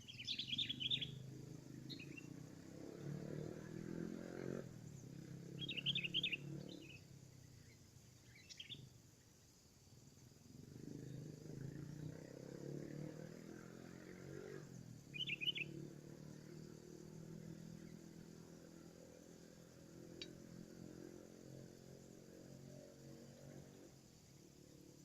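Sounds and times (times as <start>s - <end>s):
faint tick: 20.2s - 20.4s.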